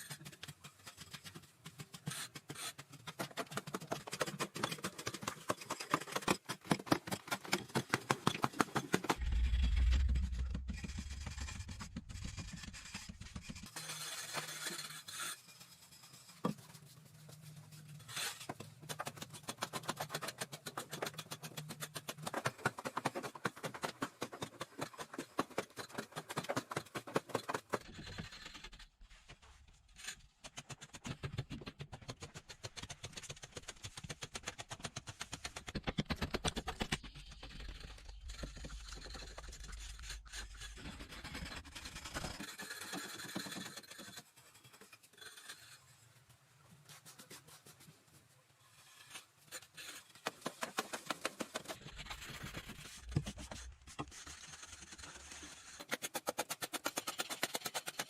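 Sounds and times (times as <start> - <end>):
rhythmic scraping on rough surface: 0.0 - 28.5, 48.7 - 58.0
steady low rumble: 9.2 - 11.4.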